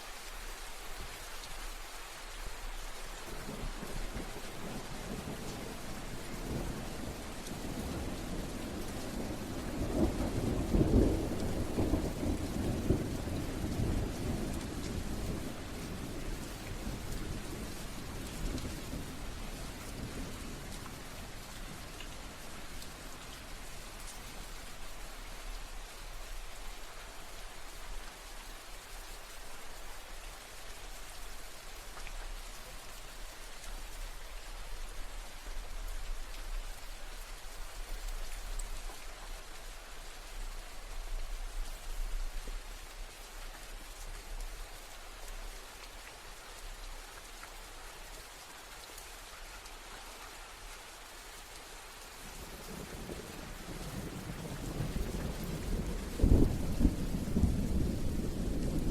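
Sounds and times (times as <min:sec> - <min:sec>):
steady rain falling: 0:00.0 - 0:58.9
thunder rumbling: 0:03.4 - 0:22.8, 0:52.4 - 0:58.9.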